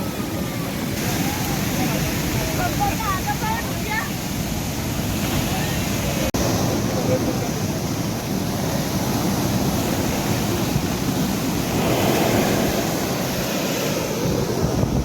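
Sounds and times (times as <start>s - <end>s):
rushing water meeting sea surf: 0.0s - 15.0s
wind on microphone: 0.0s - 15.0s.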